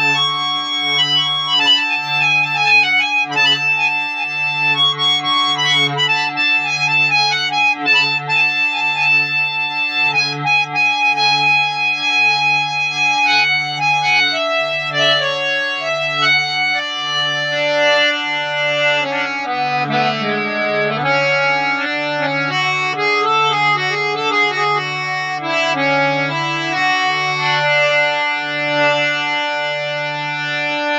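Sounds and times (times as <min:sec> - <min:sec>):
harmonium melody: 0:00.0 - 0:30.9
low repeated harmonium note: 0:00.0 - 0:30.9.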